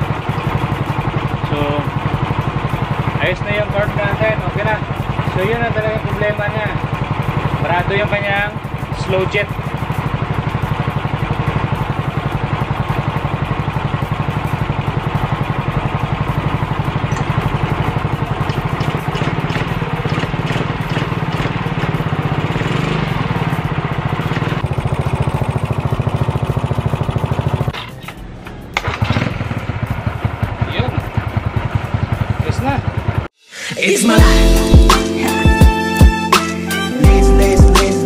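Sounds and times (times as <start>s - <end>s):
scooter engine running: 0.0s - 33.4s, 34.0s - 38.0s.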